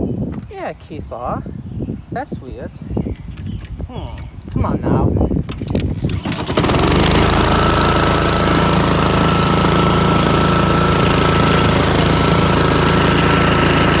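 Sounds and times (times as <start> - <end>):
lawn mower engine running: 5.7 - 14.0.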